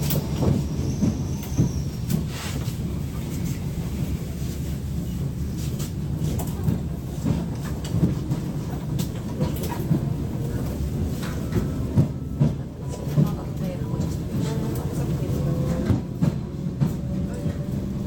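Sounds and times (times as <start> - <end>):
train rumbling on rails: 0.0 - 18.0.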